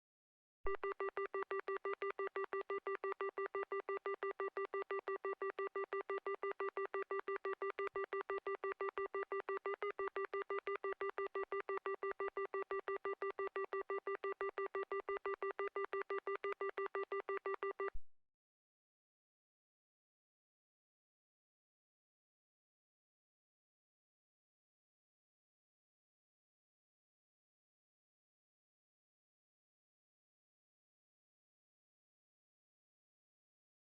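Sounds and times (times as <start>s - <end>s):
telephone busy tone beeping: 0.7s - 18.0s.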